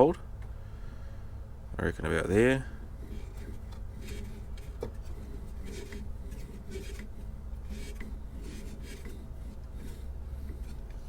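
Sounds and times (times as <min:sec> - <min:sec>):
steady low hum: 0:00.0 - 0:11.0
pencil scratching on wood: 0:03.0 - 0:11.0.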